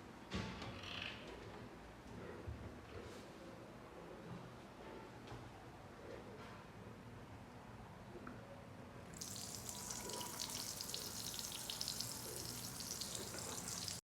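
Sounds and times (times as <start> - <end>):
tap water running into sink: 9.2 - 14.0.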